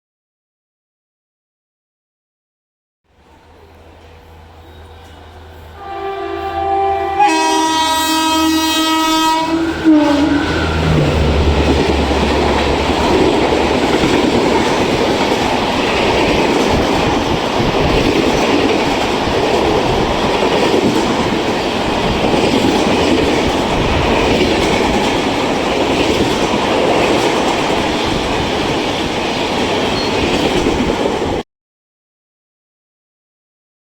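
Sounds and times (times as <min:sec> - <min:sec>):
train coaches clattering: 0:03.2 - 0:31.4
train horn honking: 0:04.1 - 0:14.3.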